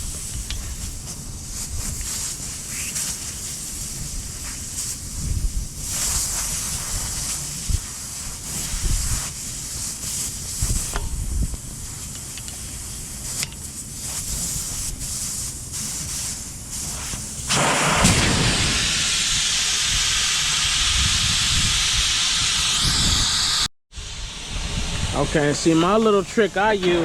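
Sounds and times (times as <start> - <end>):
air rushing out of tire: 16.2 - 27.0.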